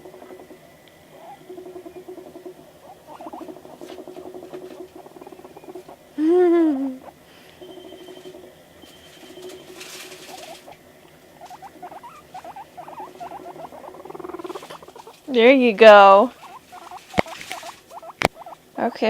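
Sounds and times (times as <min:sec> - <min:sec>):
guinea pig squeaking: 0:00.0 - 0:06.1, 0:06.9 - 0:10.8, 0:11.4 - 0:19.0
guinea pig purring: 0:00.0 - 0:19.0
guinea pig squealing: 0:01.1 - 0:06.1, 0:06.9 - 0:10.8, 0:11.4 - 0:19.0.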